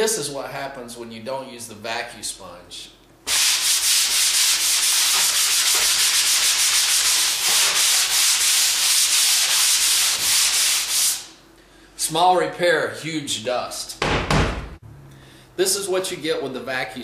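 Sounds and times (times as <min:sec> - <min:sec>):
sanding sponge scratching drywall: 0:03.3 - 0:11.3.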